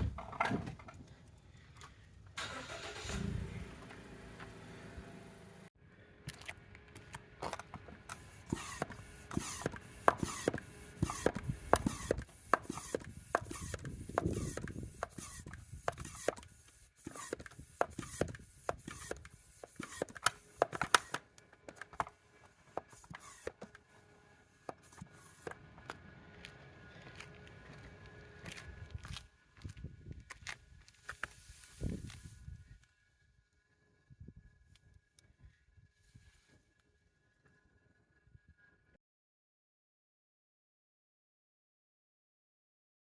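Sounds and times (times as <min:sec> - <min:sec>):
car engine running: 0:02.6 - 0:05.7.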